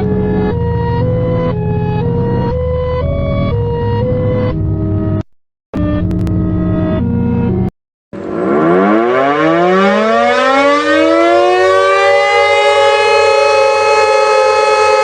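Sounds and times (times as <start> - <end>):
civil defense siren wailing: 0.0 - 4.5, 8.2 - 15.0.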